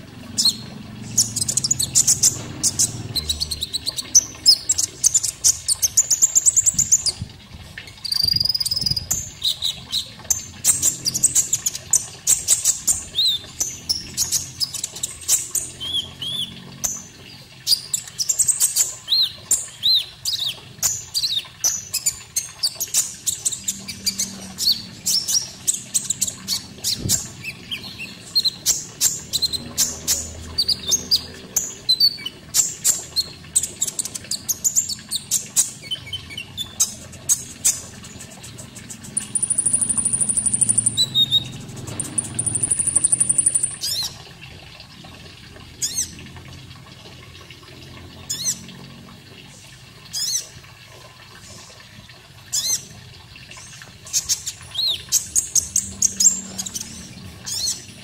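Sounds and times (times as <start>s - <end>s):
water: 0.0s - 58.0s.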